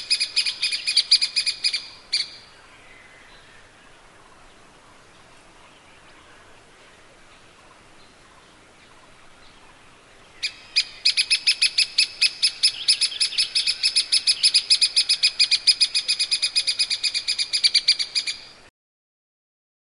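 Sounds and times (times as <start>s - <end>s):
faint background hiss: 0.0s - 18.7s
woodpecker calling sharp high notes: 10.4s - 18.5s.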